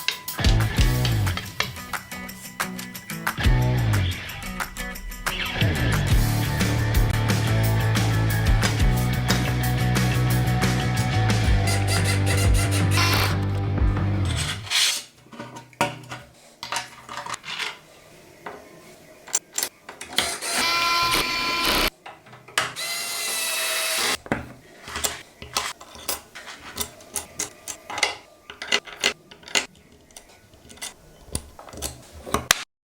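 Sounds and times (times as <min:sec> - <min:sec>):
small power tool motor: 0:11.6 - 0:13.4, 0:20.2 - 0:21.9, 0:22.8 - 0:24.2
metal parts clicking and knocking: 0:14.2 - 0:17.8, 0:24.2 - 0:32.6.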